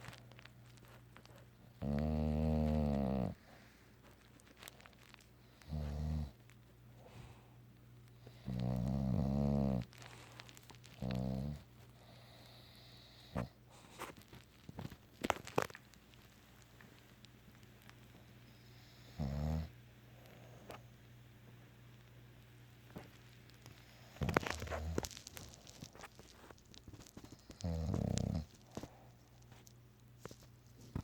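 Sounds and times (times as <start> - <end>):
dog snoring: 1.7 - 3.6, 5.5 - 6.4, 8.2 - 9.9, 11.0 - 13.6, 18.6 - 20.8, 27.3 - 28.5.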